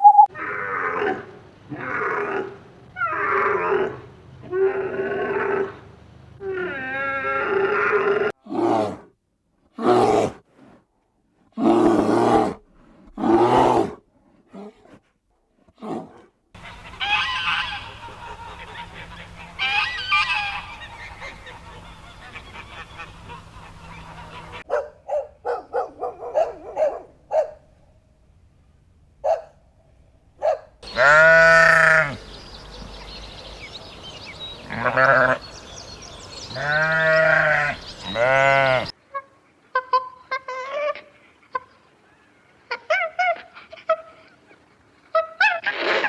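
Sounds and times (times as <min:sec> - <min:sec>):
farm animals calling: 0:16.6 - 0:27.5, 0:30.4 - 0:44.3
long wavering animal call: 0:16.7 - 0:22.4.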